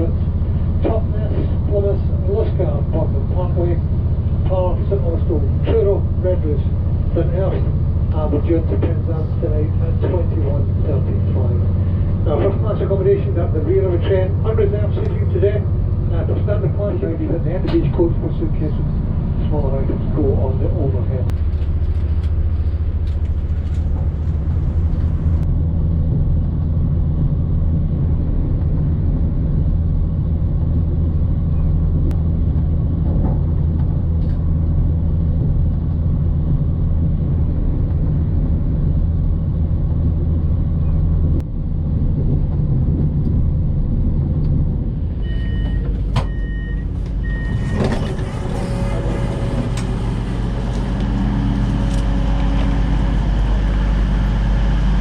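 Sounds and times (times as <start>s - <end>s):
train rumble inside carriage: 0.0s - 55.0s
short electronic beeps: 45.2s - 48.1s.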